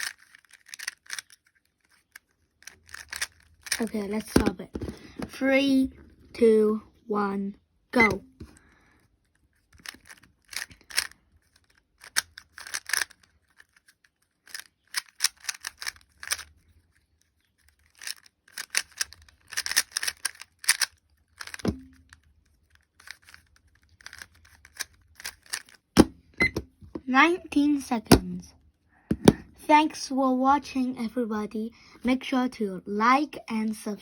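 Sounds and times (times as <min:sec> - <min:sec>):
puzzle cube clicking and scraping: 0:00.0 - 0:06.6, 0:08.0 - 0:28.4.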